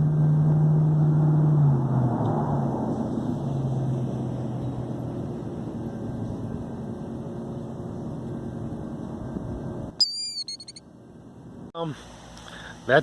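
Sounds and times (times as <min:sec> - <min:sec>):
bird alarm call: 0:10.0 - 0:10.8.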